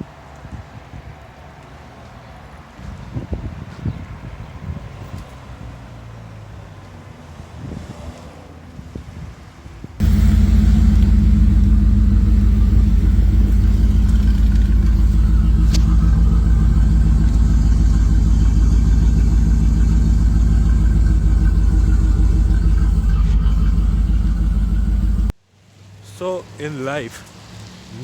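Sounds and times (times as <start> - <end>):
car engine running: 10.0 - 25.3.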